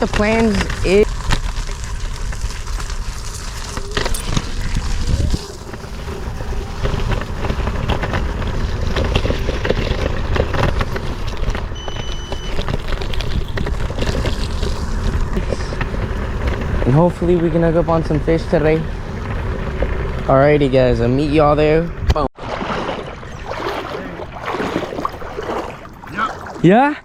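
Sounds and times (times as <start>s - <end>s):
wind buffeting microphone: 0.0s - 22.3s.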